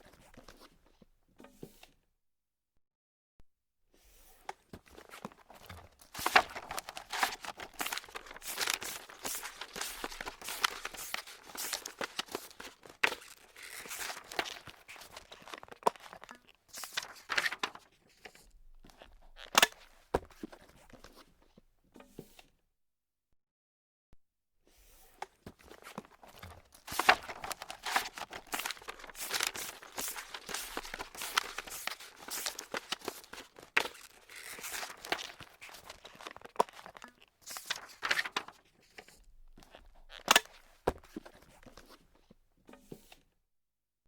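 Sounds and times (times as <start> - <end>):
paper crumpling: 5.0 - 17.8, 25.6 - 38.6.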